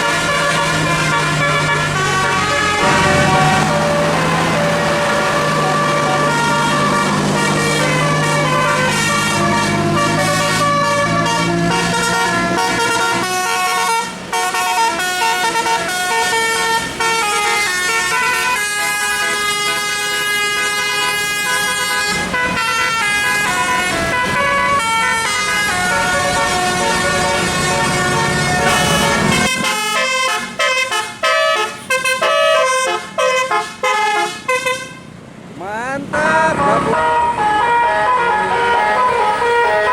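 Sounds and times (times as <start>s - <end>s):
musical air horn playing a tune: 0.0s - 35.0s, 36.4s - 39.9s.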